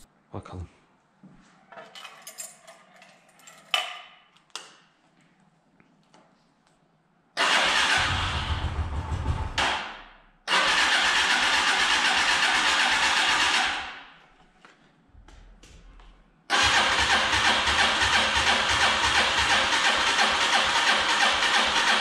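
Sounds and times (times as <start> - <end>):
small engine starting and dying: 7.4 - 9.7, 10.5 - 13.9, 16.5 - 22.0.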